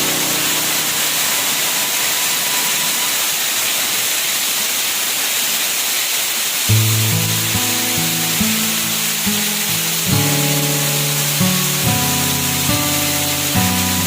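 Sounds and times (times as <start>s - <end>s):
waterfall rushing: 0.0s - 14.0s
background music: 6.8s - 14.0s.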